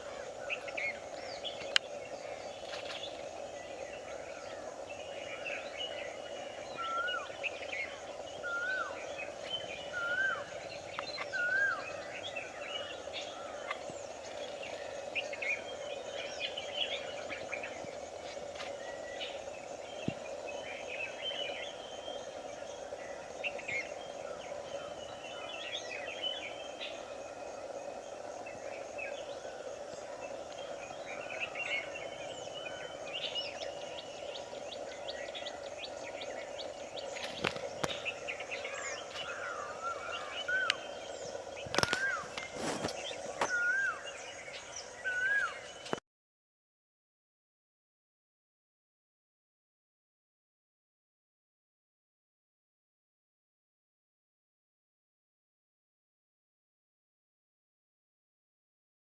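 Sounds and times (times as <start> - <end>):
birds chirping and trilling: 0.0 - 46.0
steady background hum: 0.0 - 46.0.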